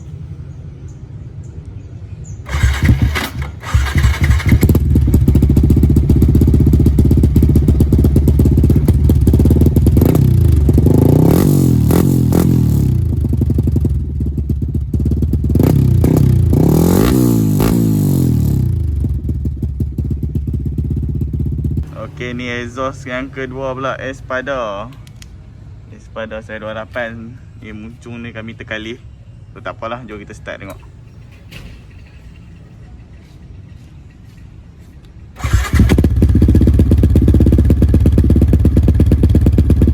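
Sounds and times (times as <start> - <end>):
motorcycle engine idling and revving: 2.5 - 23.8, 35.4 - 39.9.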